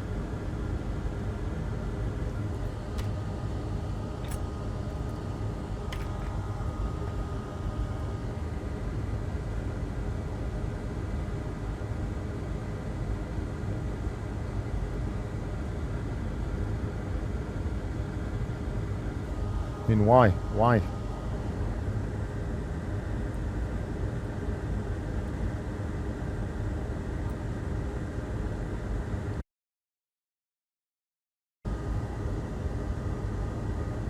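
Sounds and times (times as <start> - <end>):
low rumbling hum: 0.0 - 9.3.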